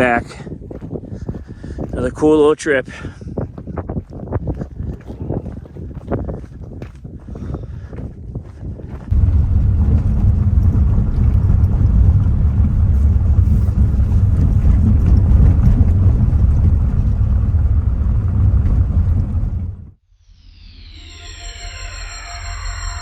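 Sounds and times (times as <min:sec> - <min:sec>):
vehicle engine rumbling: 0:08.9 - 0:20.0.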